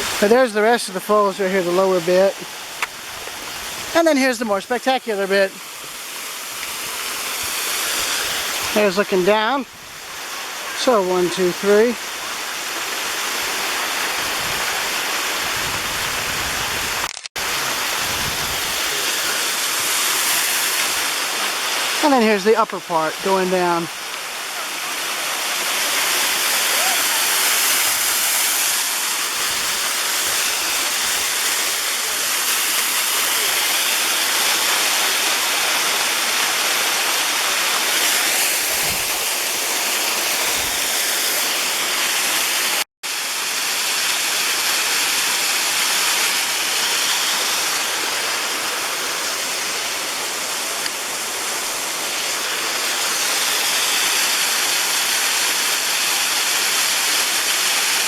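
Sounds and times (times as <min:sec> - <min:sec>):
waterfall cascading: 0:00.0 - 0:58.0.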